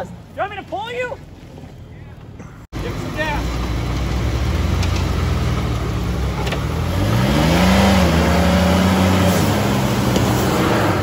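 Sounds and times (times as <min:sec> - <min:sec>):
car engine revving: 0:02.8 - 0:11.0.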